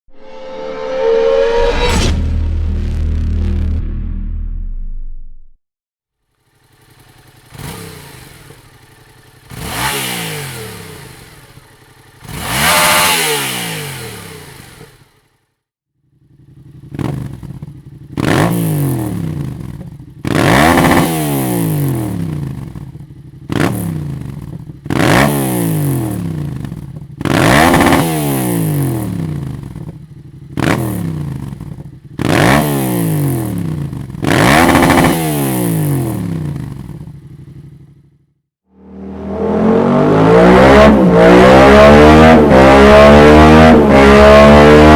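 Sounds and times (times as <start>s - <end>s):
motorcycle engine revving: 6.3s - 15.4s, 16.1s - 44.9s.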